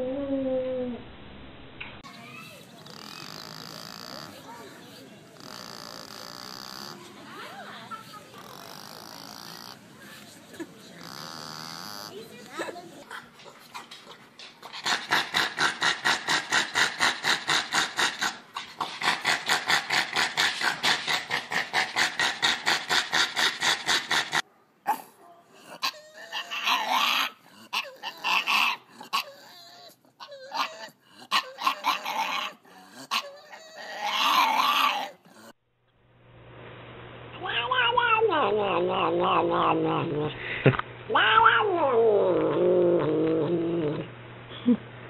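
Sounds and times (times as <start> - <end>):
dog whining and whimpering: 25.6 - 35.2.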